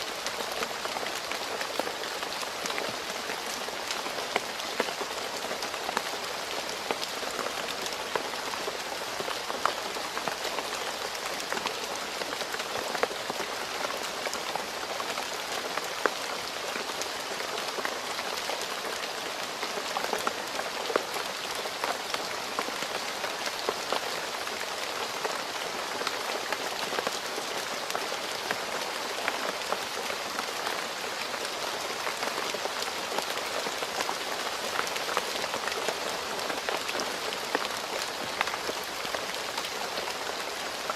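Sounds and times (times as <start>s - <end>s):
rain on a hard surface: 0.0s - 40.9s.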